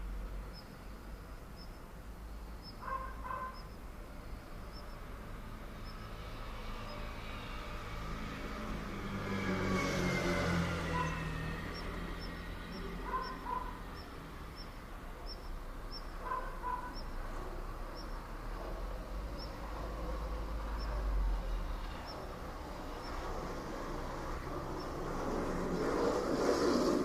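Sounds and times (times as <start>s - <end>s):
low traffic rumble: 0.0s - 27.0s
bird paired calls: 11.0s - 17.1s.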